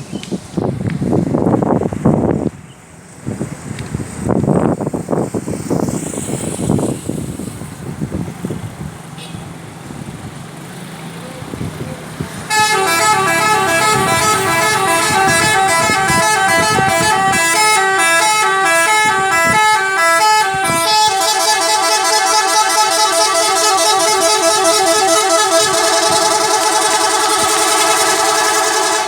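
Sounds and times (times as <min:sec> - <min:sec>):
musical bus air horns: 0:09.2 - 0:09.5, 0:12.5 - 0:29.0.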